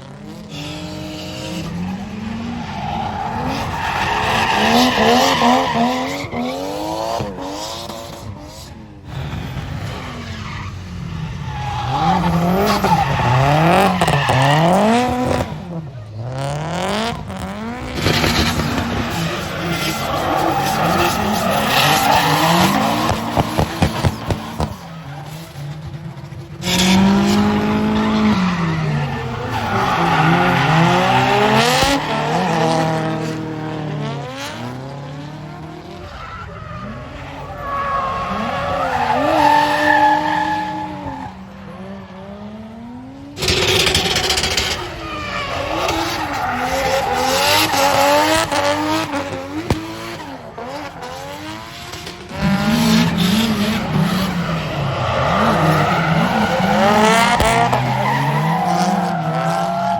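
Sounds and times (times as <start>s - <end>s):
car engines revving hard: 0.0s - 59.9s
tyre screech: 2.4s - 8.4s, 18.0s - 25.7s, 26.6s - 33.2s, 36.0s - 41.4s, 43.4s - 49.7s, 53.0s - 59.9s.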